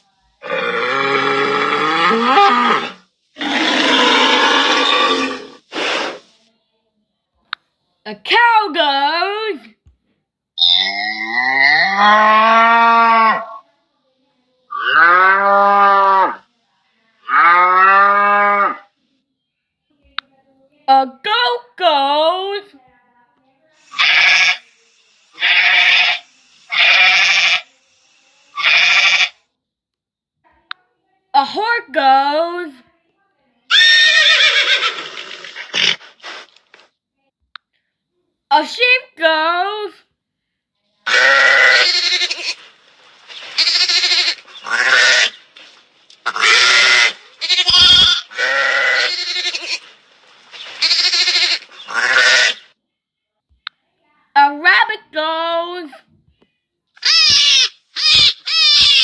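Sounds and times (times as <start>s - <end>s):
goat bleating: 23.8s - 24.7s, 25.4s - 27.7s, 28.6s - 29.4s, 33.7s - 36.1s, 41.1s - 52.6s, 57.0s - 59.0s.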